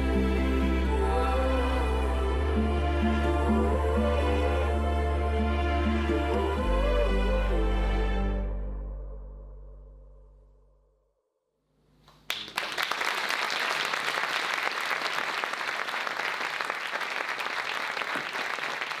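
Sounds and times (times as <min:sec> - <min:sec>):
music: 0:00.0 - 0:10.6
audience applause: 0:12.3 - 0:19.0.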